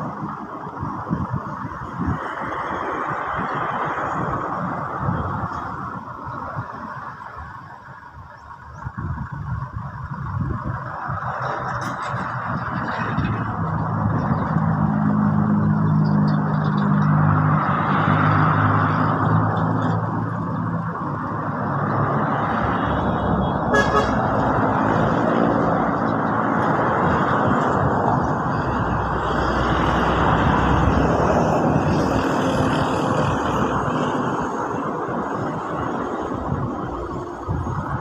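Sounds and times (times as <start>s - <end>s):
motor vehicle running: 0.0s - 38.0s
short horn toot: 23.7s - 24.2s.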